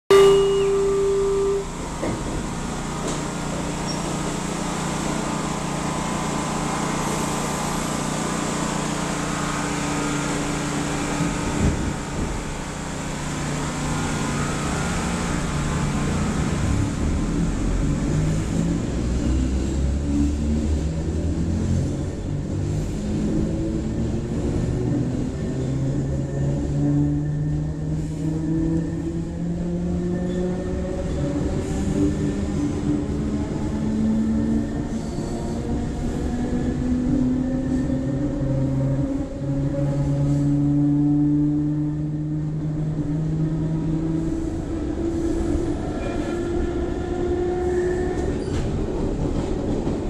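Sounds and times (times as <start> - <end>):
high whines: 0.1 - 1.8
train traction motors humming: 0.1 - 19.9
train running rumble: 0.1 - 50.0.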